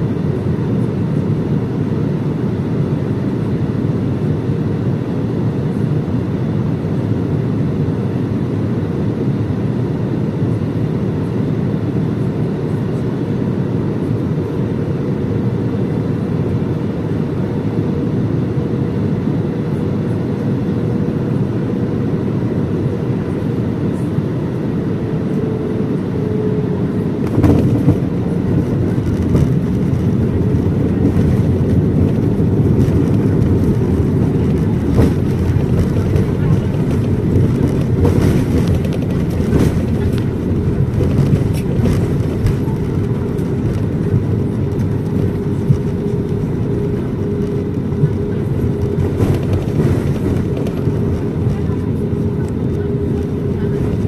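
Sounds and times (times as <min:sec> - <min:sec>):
jet engines droning: 0:00.0 - 0:54.0
cabin airflow rush: 0:25.3 - 0:54.0.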